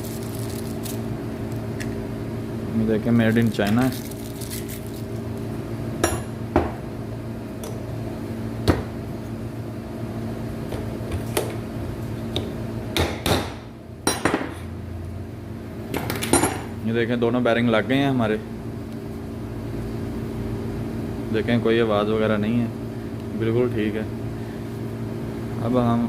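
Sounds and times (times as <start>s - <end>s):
hammer tapping metal: 12.4s - 14.6s.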